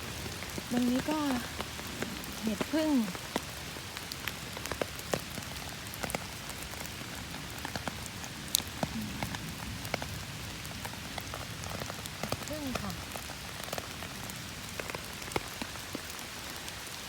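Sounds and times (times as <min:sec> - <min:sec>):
raindrops tapping on umbrella: 0:00.0 - 0:17.0
steady rain falling: 0:00.0 - 0:17.0.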